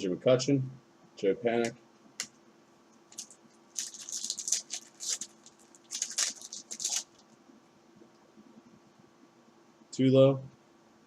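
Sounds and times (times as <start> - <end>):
cards rustling scratchily: 3.1 - 7.2.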